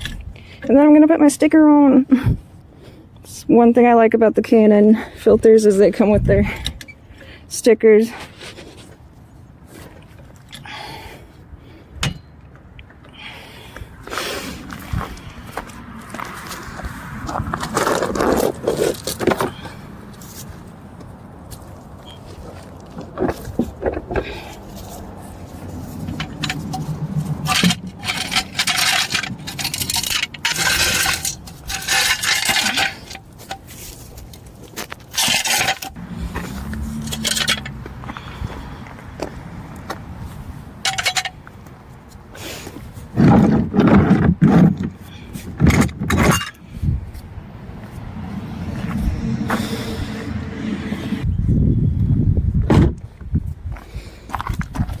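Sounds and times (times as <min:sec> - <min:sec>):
steel clanking and scraping on ground: 0:14.0 - 0:20.7, 0:21.5 - 0:38.3, 0:40.3 - 0:41.6, 0:42.4 - 0:47.2.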